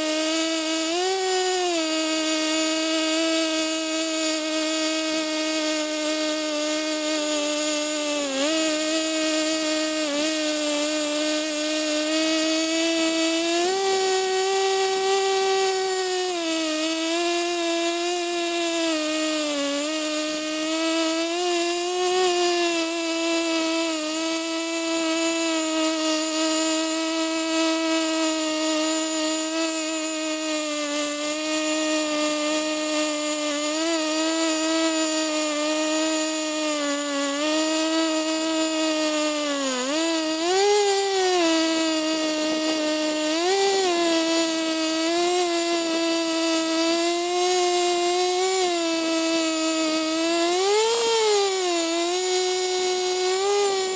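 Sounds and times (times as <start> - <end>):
chainsaw cutting at high revs: 0.0 - 53.9.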